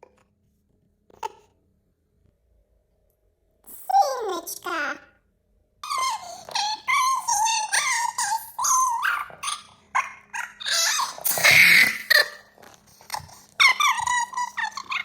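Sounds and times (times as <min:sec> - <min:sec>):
high squeaky voice squealing: 0:05.8 - 0:15.0.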